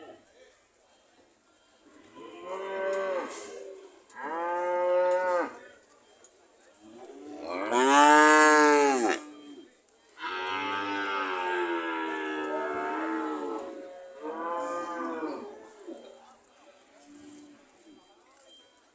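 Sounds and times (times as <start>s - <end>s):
cows mooing: 7.4s - 9.4s, 10.2s - 15.6s.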